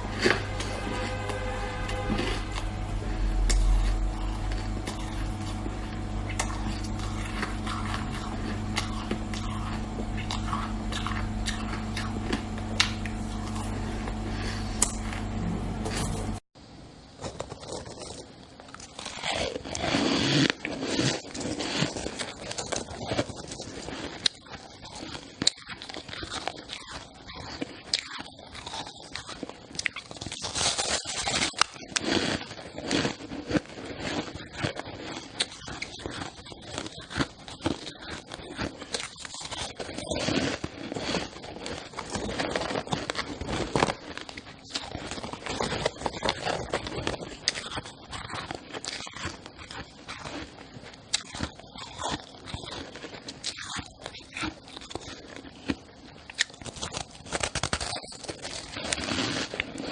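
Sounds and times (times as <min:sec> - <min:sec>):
crunching shaved ice: 0:00.0 - 0:15.3, 0:17.2 - 0:59.9.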